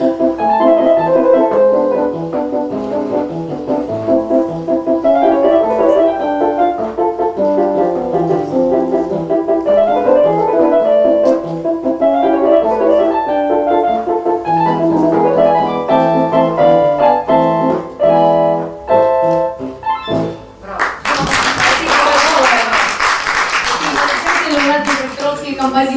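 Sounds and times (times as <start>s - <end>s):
piano playing a waltz: 0.0s - 20.7s.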